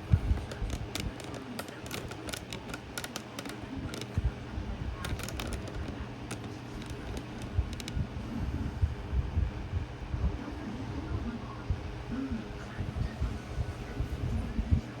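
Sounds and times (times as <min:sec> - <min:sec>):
light clicks: 0:00.0 - 0:04.3, 0:05.0 - 0:08.0
box fan humming: 0:00.0 - 0:15.0.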